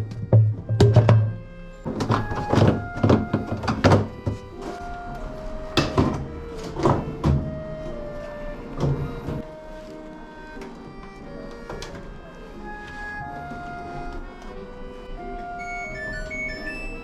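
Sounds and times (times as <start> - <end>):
melody of held notes: 0.0 - 17.0
percussive knocks: 0.1 - 4.4.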